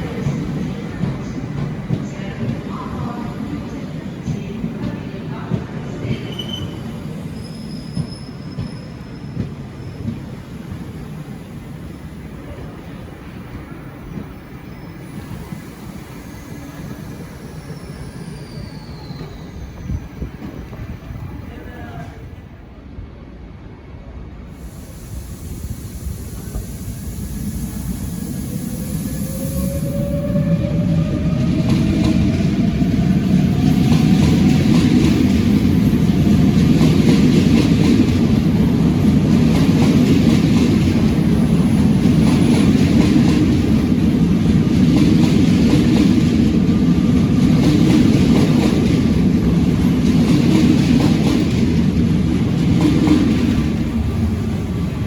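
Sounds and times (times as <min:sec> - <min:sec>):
train rumble: 0:00.0 - 0:55.0
hiss: 0:24.5 - 0:30.0.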